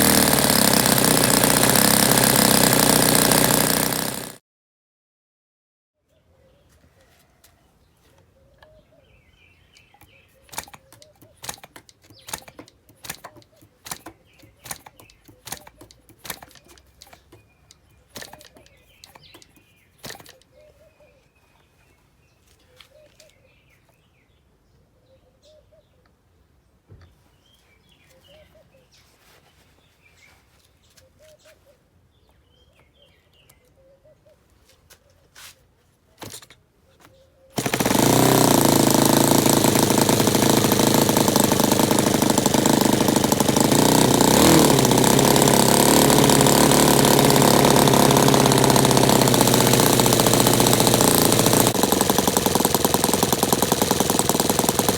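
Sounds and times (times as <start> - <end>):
sharp clicks and taps: 9.8 - 20.5.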